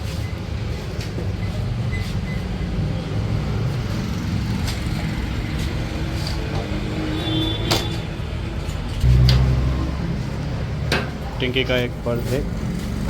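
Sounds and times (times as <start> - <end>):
low motor rumble: 9.0 - 13.0.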